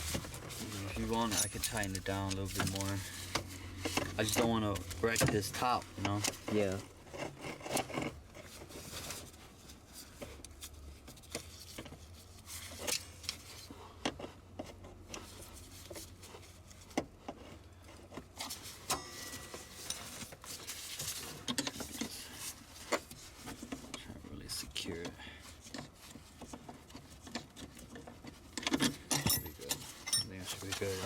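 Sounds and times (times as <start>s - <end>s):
hand tools clicking and knocking: 0.0s - 6.7s, 25.0s - 31.0s.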